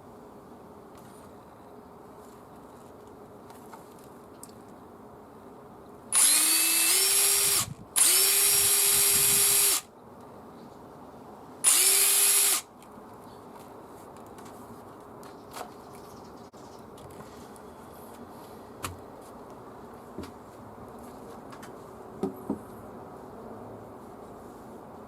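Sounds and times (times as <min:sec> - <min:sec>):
impact driver motor whine: 0:06.2 - 0:09.8, 0:11.6 - 0:12.6.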